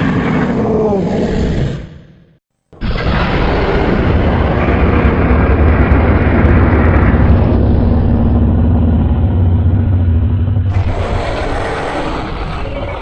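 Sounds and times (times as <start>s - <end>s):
loud low rumble: 2.8s - 13.0s.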